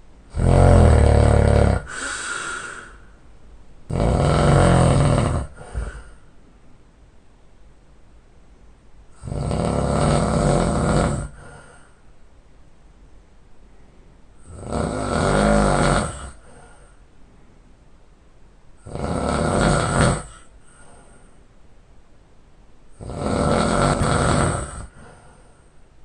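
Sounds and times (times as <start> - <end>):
man snoring heavily: 0.3 - 3.0, 3.9 - 6.2, 9.2 - 11.8, 14.4 - 16.8, 18.8 - 20.5, 23.0 - 25.3
faint breath: 1.8 - 3.3, 5.5 - 6.4, 11.3 - 12.2, 16.1 - 17.6, 20.2 - 21.6, 24.6 - 25.9.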